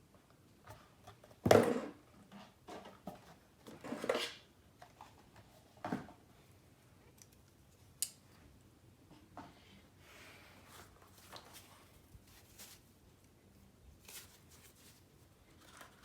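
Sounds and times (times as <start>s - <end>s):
packaging rustling: 14.0s - 16.0s.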